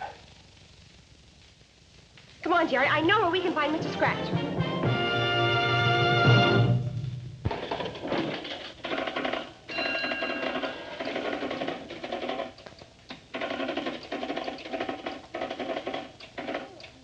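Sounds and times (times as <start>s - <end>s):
fast mechanical clatter: 7.5s - 17.0s.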